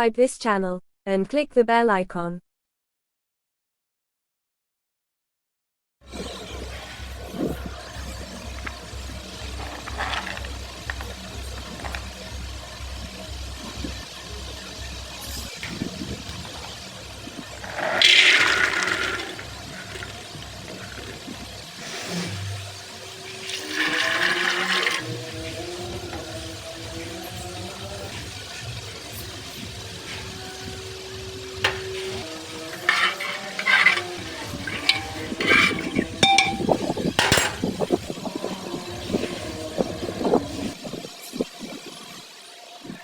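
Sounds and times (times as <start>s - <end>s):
faint music: 6.1s - 43.0s
water pouring and splashing: 6.1s - 43.0s
spoon stirring in a metal pan: 17.5s - 40.7s.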